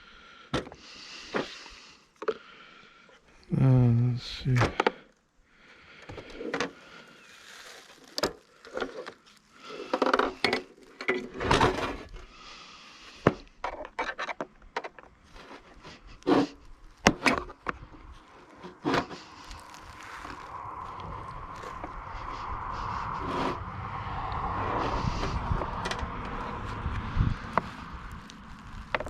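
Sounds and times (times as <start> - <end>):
metal safe door clanking and scraping: 11.2 - 12.1.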